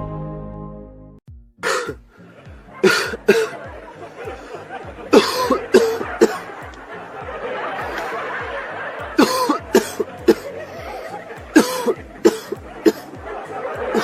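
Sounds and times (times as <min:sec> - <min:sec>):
person coughing: 0:01.6 - 0:02.0, 0:02.8 - 0:03.6, 0:05.2 - 0:06.4, 0:09.2 - 0:10.1, 0:11.6 - 0:13.0.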